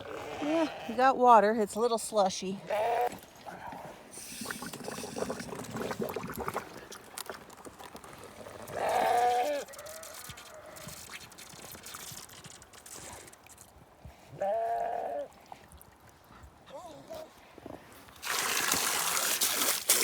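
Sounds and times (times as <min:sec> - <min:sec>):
sheep bleating: 0:02.7 - 0:03.2, 0:08.7 - 0:10.8, 0:14.4 - 0:15.3.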